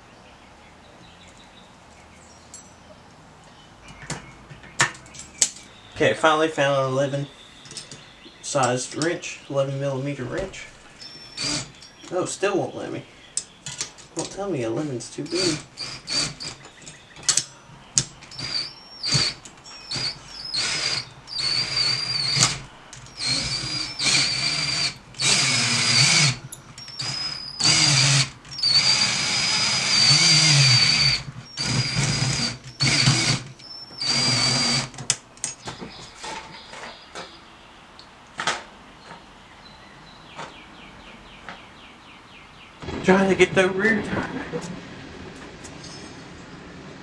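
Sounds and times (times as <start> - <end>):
electric drill motor whine: 11.0 - 11.9, 15.3 - 17.4, 18.0 - 35.0.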